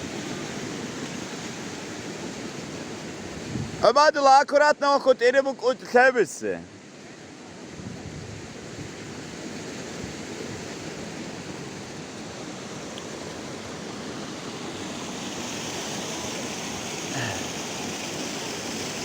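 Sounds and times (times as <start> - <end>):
waterfall rushing: 10.2 - 19.0.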